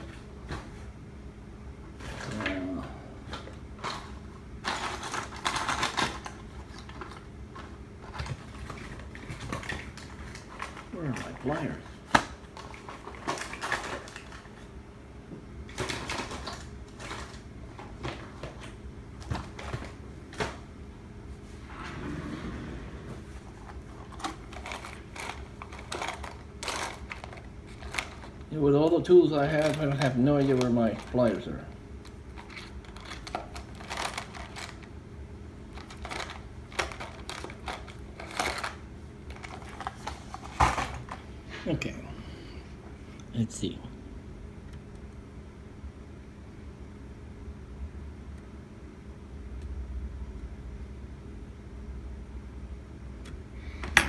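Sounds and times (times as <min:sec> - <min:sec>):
low electrical hum: 0:00.0 - 0:54.0
tools clicking and rattling: 0:24.0 - 0:28.5, 0:32.0 - 0:34.8.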